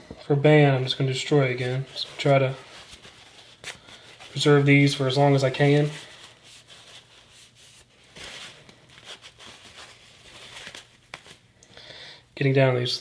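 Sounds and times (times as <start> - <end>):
rubbing and scrubbing: 1.4 - 11.3.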